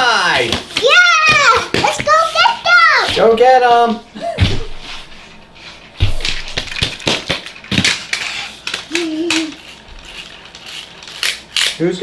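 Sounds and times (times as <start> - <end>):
toy cars clicking: 6.6 - 11.8.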